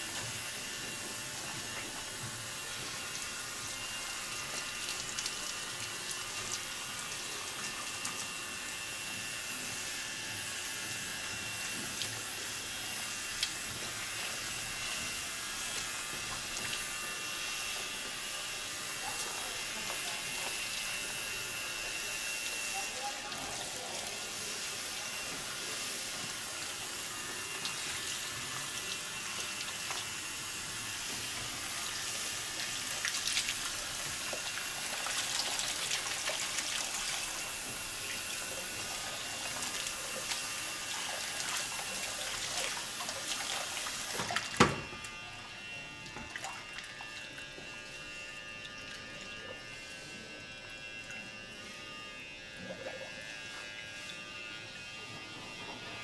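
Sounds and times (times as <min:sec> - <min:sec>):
water running from a tap: 0:00.0 - 0:45.2, 0:46.0 - 0:49.6.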